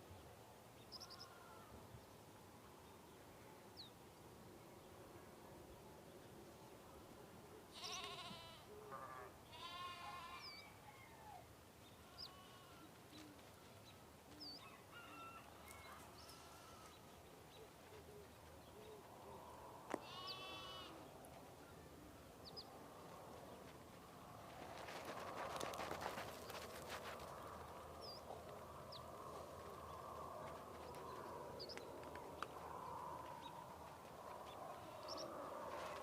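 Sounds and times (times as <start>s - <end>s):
livestock bleating: 1.1s - 1.7s, 7.7s - 10.6s, 12.0s - 13.0s, 16.0s - 17.0s, 19.9s - 21.1s.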